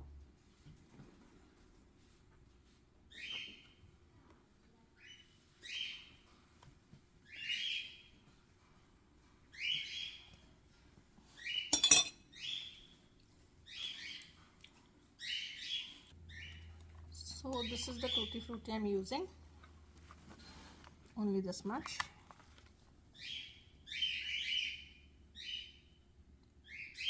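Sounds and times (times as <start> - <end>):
bird chirping: 3.1 - 3.8, 5.0 - 6.3, 7.2 - 8.2, 9.5 - 10.4, 11.4 - 14.4, 15.2 - 16.8, 17.5 - 19.0, 23.1 - 26.0, 26.6 - 27.0.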